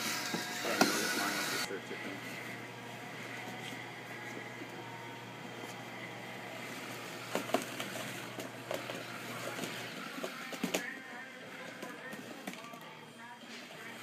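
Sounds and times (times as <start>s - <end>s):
toy electric motors whirring: 0.0s - 2.6s, 5.6s - 14.0s.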